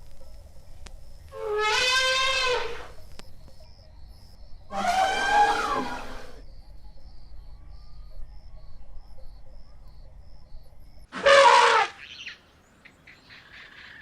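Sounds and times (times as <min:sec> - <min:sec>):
insect chirping: 0:00.0 - 0:11.1
elephant trumpet call: 0:01.3 - 0:03.0, 0:04.7 - 0:06.4, 0:11.1 - 0:12.1.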